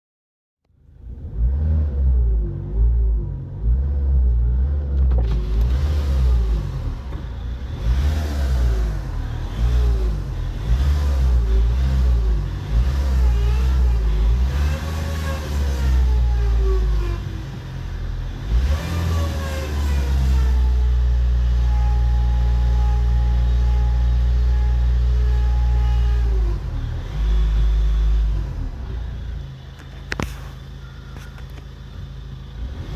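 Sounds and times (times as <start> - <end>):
power steering whine: 0.6 - 32.9
diesel engine running: 0.8 - 32.9.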